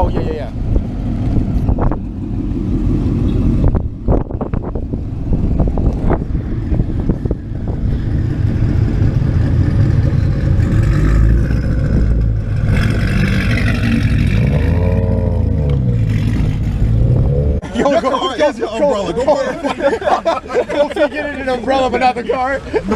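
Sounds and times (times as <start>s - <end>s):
car engine running while driving: 0.5s - 17.8s.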